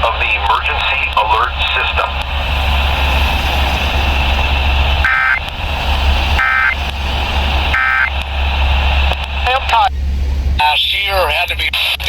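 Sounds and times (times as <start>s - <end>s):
steady hiss: 0.0s - 10.6s
low hum: 0.0s - 12.0s
screechy two-tone data bursts: 2.1s - 8.8s.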